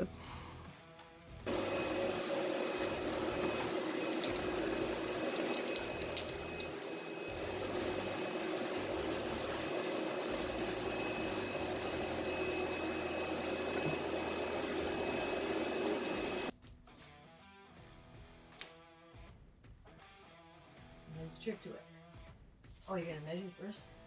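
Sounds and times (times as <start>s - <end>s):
mechanical hum and hiss: 1.5s - 16.5s.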